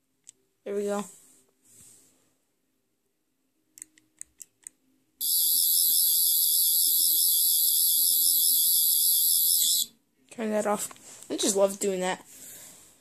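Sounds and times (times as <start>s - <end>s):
high-pitched warbling electronic tone: 5.2s - 9.9s.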